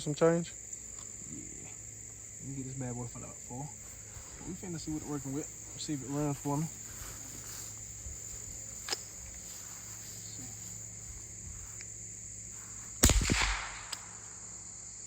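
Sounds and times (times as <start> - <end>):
crickets buzzing: 0.0 - 15.0
rifle shot with echo: 13.0 - 14.4.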